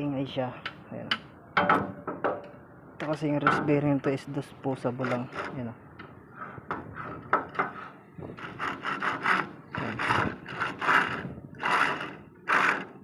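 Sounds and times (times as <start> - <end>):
bearing grinding: 4.8 - 5.7, 6.3 - 13.0.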